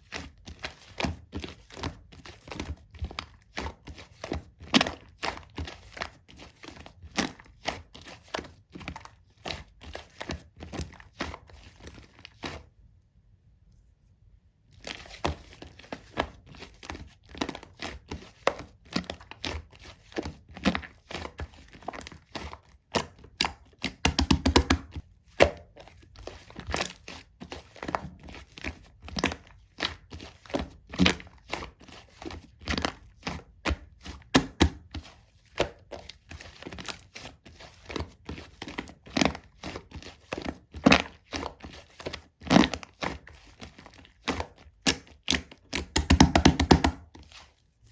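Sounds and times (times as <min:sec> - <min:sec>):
slime crackles: 0:14.8 - 0:47.9.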